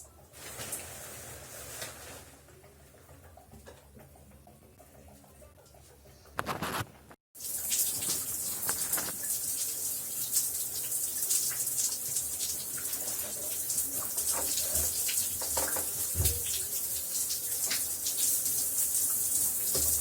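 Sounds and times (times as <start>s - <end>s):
shower water spray hissing: 7.4s - 20.0s.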